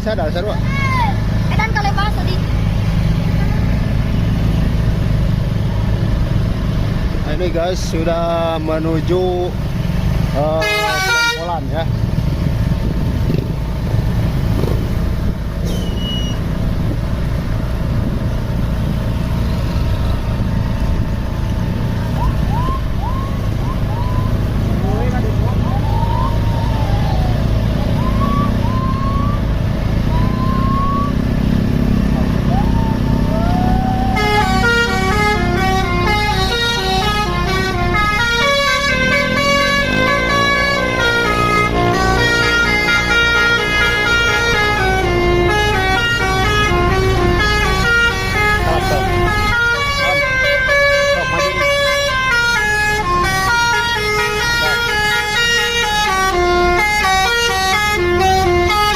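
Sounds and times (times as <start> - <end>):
bus engine rumbling: 0.0 - 58.9
short high whistle: 15.6 - 16.4
musical air horn tune: 34.1 - 58.9.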